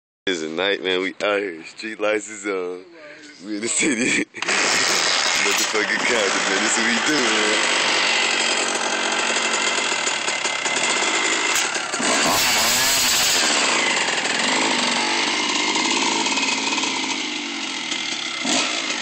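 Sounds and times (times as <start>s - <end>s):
dirt bike engine revving: 4.4s - 19.0s.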